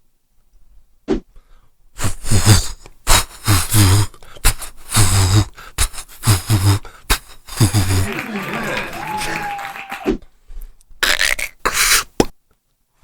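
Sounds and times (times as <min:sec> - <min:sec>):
person beatboxing: 0:02.0 - 0:08.2, 0:11.0 - 0:12.3.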